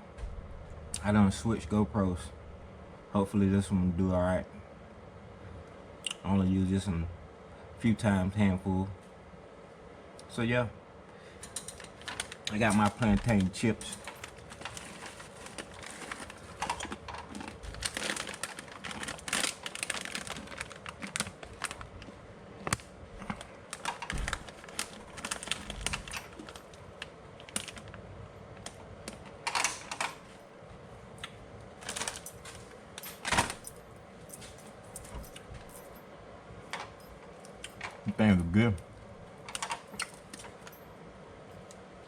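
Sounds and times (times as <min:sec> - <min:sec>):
bag crinkling: 0:11.7 - 0:28.0, 0:31.8 - 0:33.8
chips crunching while chewed: 0:14.4 - 0:22.0.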